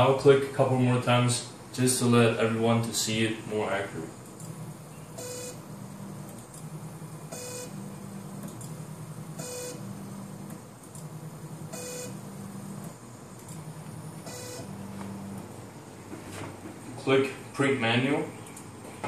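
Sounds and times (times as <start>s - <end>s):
lift motor humming: 4.2s - 17.0s
short printer beep: 5.2s - 5.6s, 7.3s - 7.8s, 9.4s - 9.9s, 11.7s - 12.2s, 14.2s - 14.8s.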